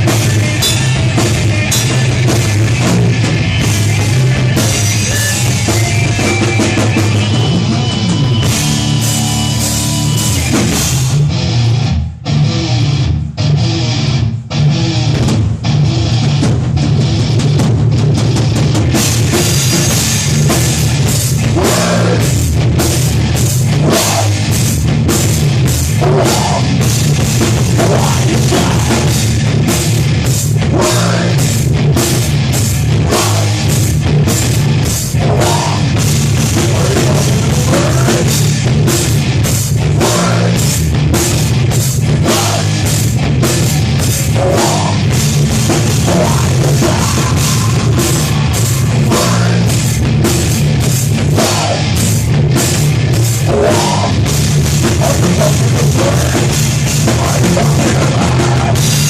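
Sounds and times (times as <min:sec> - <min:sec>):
heavy metal band playing: 0:00.0 - 0:59.0.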